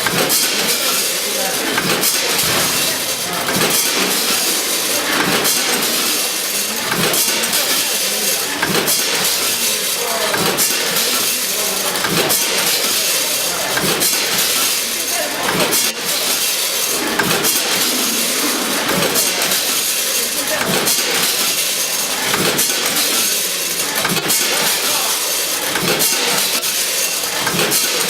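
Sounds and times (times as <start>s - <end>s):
mechanical clacks: 0.0s - 28.0s
packaging machine running: 0.0s - 28.0s.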